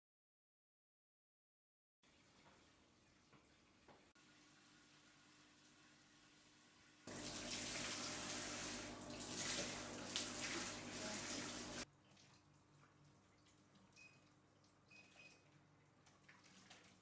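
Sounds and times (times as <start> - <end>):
water running from a tap: 7.1 - 12.3.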